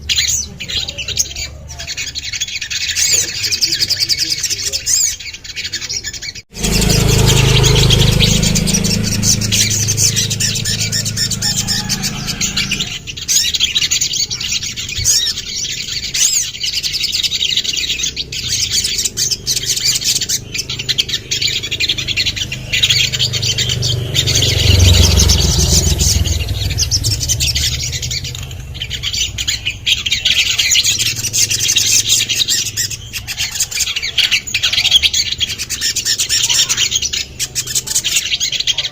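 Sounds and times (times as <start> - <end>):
sunbird chirping and trilling: 0.0 - 38.9
low rumble: 6.5 - 13.3, 18.3 - 31.6.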